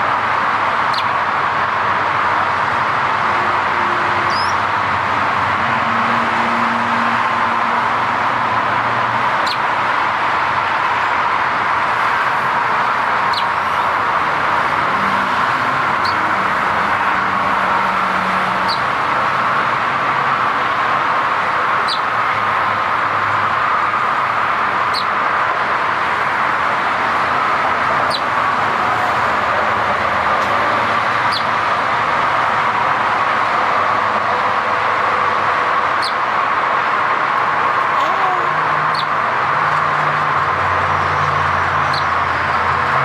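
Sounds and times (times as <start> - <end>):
steady background noise: 0.0 - 43.0
sparrow chirping: 0.9 - 1.1, 4.3 - 4.6, 9.4 - 9.7, 13.3 - 13.9, 15.9 - 16.2, 18.6 - 18.9, 21.8 - 22.1, 24.9 - 25.1, 28.1 - 28.3, 31.3 - 31.5, 36.0 - 36.2, 38.9 - 39.2, 41.9 - 42.1.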